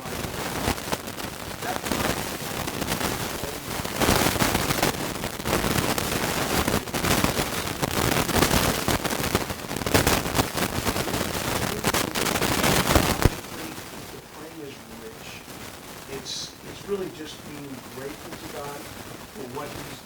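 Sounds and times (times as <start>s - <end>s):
voice: 0.0s - 0.6s, 1.6s - 4.4s, 5.6s - 7.4s, 10.8s - 15.5s, 16.1s - 20.0s
static crackling and pops: 0.0s - 20.0s.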